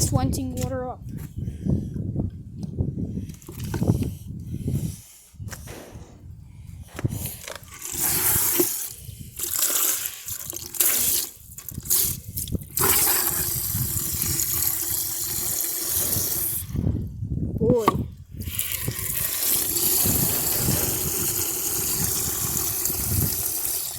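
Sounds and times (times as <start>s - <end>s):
low rumble: 5.6s - 7.7s.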